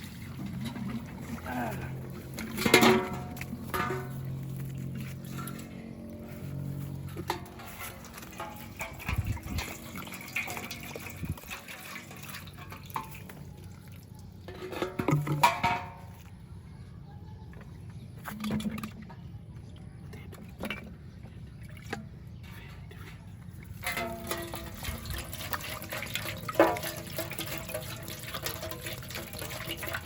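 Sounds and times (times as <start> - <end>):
water sloshing and trickling: 0.0 - 16.5, 17.6 - 30.0
small clicks and splashes: 7.1 - 15.5, 23.6 - 30.0.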